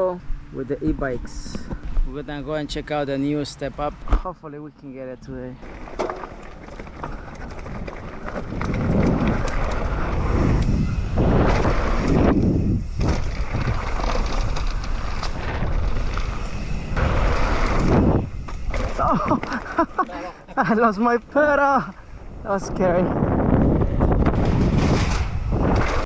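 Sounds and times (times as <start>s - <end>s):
trail noise: 0.0s - 26.0s
bike clicking and knocking: 5.6s - 16.7s
wind buffeting microphone: 6.6s - 20.0s, 21.2s - 26.0s.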